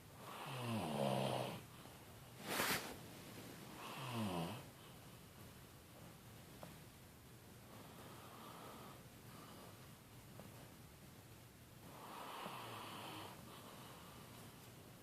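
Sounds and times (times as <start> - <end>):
man snoring: 0.3 - 1.6, 3.8 - 4.7.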